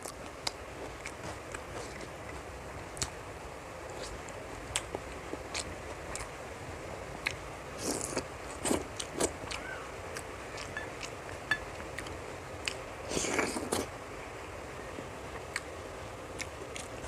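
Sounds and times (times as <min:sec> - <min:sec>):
person chewing food: 0:00.0 - 0:03.2, 0:03.9 - 0:06.4, 0:07.2 - 0:13.9, 0:15.3 - 0:15.7, 0:16.4 - 0:17.0.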